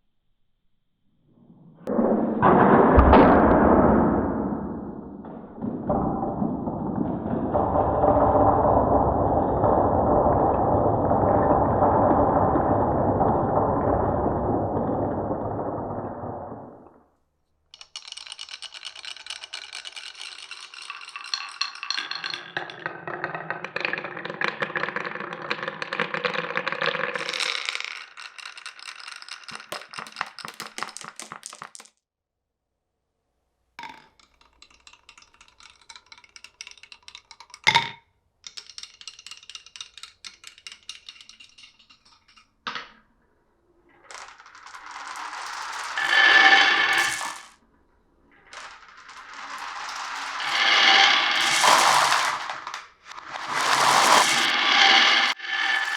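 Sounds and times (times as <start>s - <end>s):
marbles rolling rumble: 1.8s - 17.1s, 17.8s - 32.0s, 33.8s - 37.6s, 38.5s - 42.9s, 43.7s - 55.9s
marbles clicking with ringing tones: 17.7s - 31.9s, 33.8s - 42.9s, 44.0s - 47.6s, 48.4s - 55.9s.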